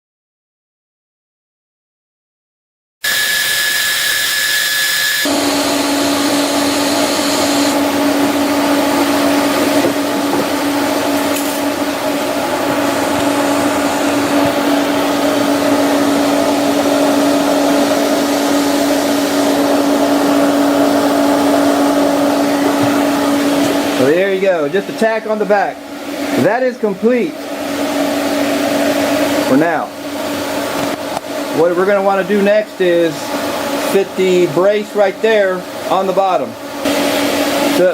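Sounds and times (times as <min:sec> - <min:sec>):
small electric motor running: 0:03.0 - 0:09.7.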